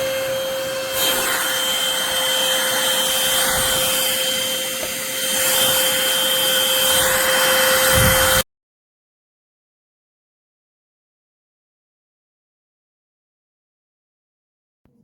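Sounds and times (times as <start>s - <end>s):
stick vacuum running: 0.0s - 8.4s.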